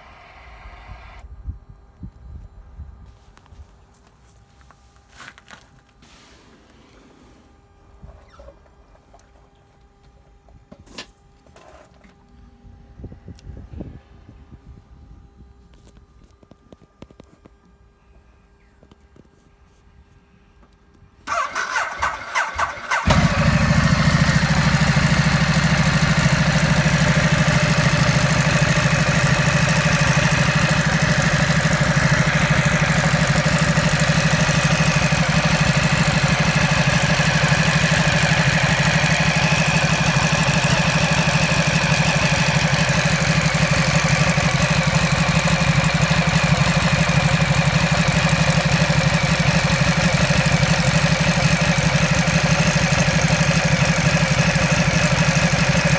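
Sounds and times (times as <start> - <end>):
motorcycle engine idling: 21.3 - 55.9
motorcycle starter cranking: 21.3 - 55.9.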